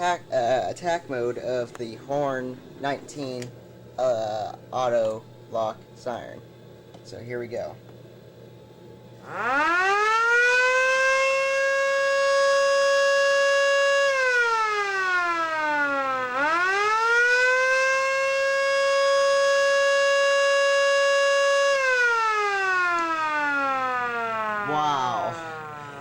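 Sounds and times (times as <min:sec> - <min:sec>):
air raid siren wailing: 0:09.2 - 0:26.0.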